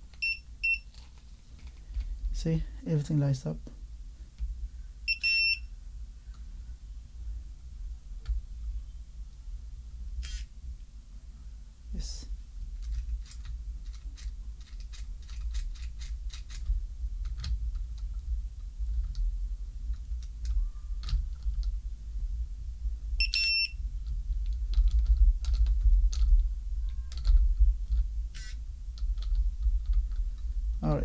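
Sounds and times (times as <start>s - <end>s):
steady low hum: 0.0s - 31.0s
electronic lock beep: 0.2s - 0.8s, 5.1s - 5.6s, 23.2s - 23.8s.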